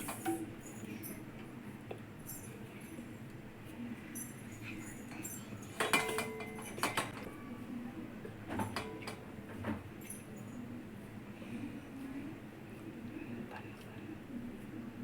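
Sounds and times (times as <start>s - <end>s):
dishware and utensils clinking: 4.6s - 7.2s.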